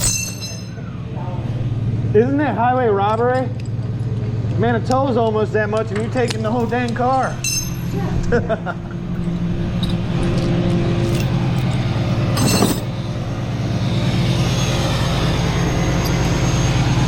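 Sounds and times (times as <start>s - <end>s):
metal clank: 0.0s - 0.8s, 5.9s - 8.0s, 9.2s - 13.0s
tow truck engine running: 0.0s - 17.0s.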